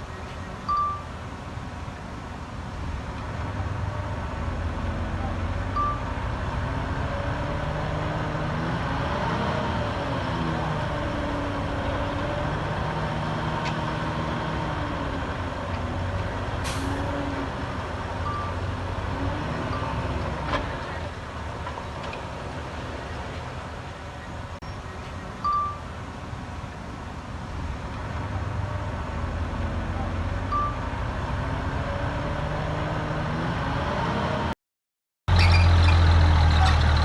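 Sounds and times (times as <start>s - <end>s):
short high beeps: 0.7s - 1.1s, 25.4s - 25.8s
diesel construction machinery revving: 2.5s - 24.6s, 27.4s - 34.6s, 35.3s - 37.0s
air brake hiss: 16.6s - 17.0s.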